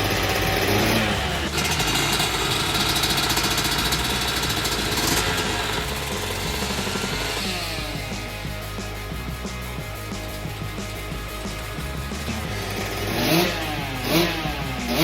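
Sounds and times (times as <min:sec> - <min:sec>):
two-stroke engine revving: 0:00.0 - 0:15.0.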